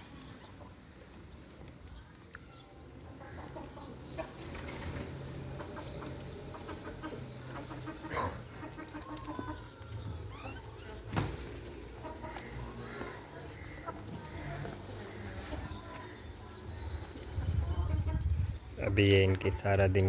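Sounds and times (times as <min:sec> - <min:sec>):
chickens clucking: 0:00.0 - 0:01.7, 0:02.8 - 0:20.0
wings flapping: 0:04.4 - 0:05.2.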